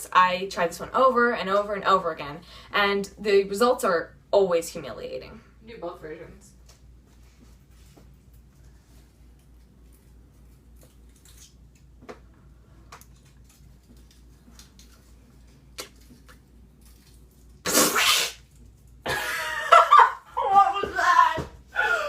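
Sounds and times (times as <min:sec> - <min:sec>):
person stifled sneeze: 0:17.6 - 0:18.4.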